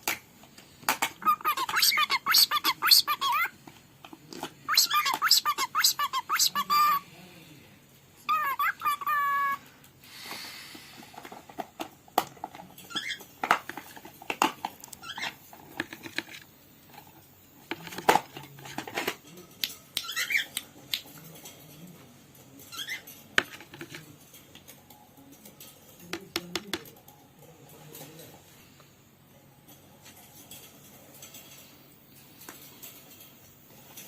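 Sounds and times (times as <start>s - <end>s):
bird chirps: 4.7s - 7.0s.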